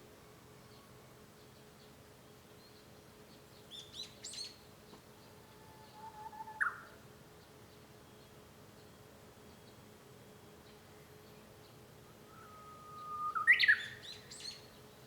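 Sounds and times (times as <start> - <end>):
bird whistled song: 5.8 - 6.9, 12.2 - 14.7.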